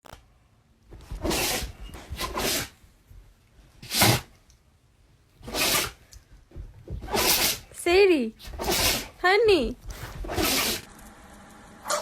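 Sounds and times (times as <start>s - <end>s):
dog sneezing: 1.2s - 2.7s, 3.8s - 4.3s, 5.4s - 6.0s, 7.0s - 7.7s, 8.4s - 9.2s, 10.0s - 10.9s.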